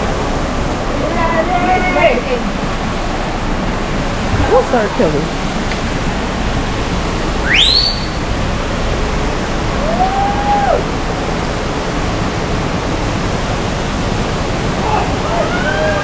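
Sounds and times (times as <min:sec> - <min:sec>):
waterfall rushing: 0:00.0 - 0:16.0
rising whistle: 0:07.4 - 0:08.3.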